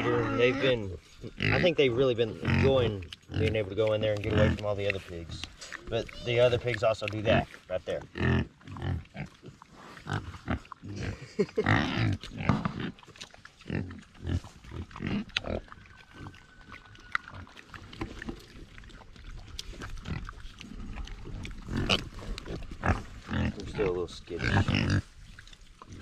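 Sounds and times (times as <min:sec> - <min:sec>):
pigs grunting: 0:00.0 - 0:26.0.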